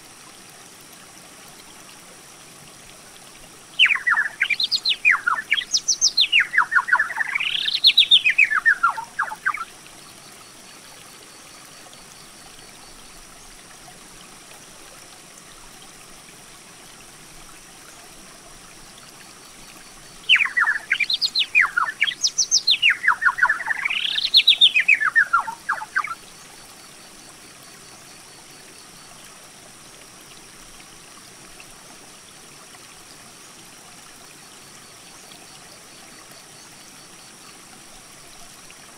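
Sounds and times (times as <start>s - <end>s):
faint steady hiss: 0.0s - 38.9s
songbird singing: 3.8s - 9.7s, 20.0s - 26.3s.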